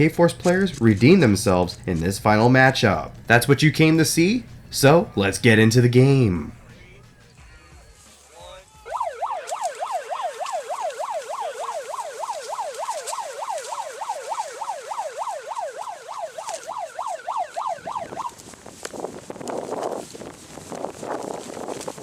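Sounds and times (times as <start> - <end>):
electronic siren yelping: 8.9 - 18.5.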